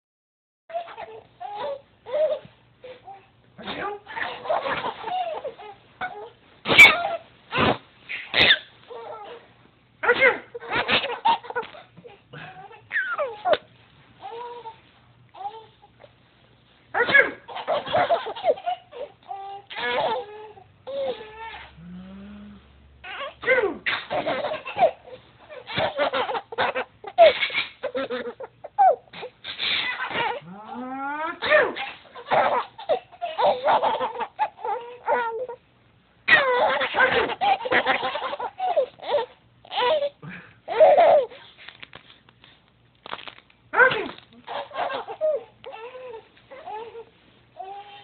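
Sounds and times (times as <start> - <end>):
fake sneeze: 3.6 - 5.1, 6.6 - 8.7, 10.0 - 11.3, 17.0 - 18.1, 23.4 - 24.9, 27.2 - 27.9, 29.1 - 30.5, 31.3 - 32.3, 36.3 - 37.4, 43.8 - 44.2
man fake sneezing: 10.0 - 11.1, 17.0 - 17.5, 23.4 - 24.1, 31.3 - 32.0.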